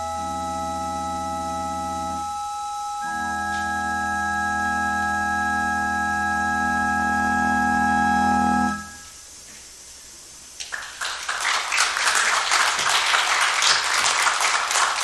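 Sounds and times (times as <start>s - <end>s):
pipe organ chord: 0.0s - 9.1s
applause: 10.6s - 15.0s.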